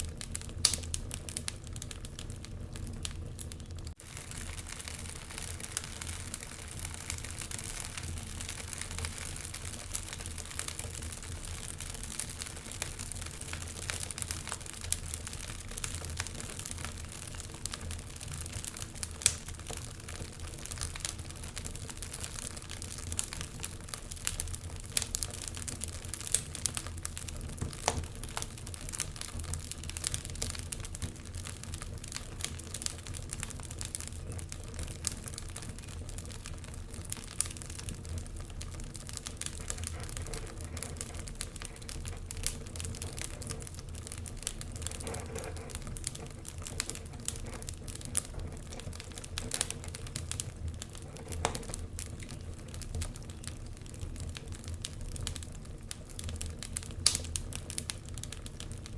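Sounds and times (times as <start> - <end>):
low rumble of flames: 0.0 - 58.9
wood fire crackling: 0.0 - 58.9.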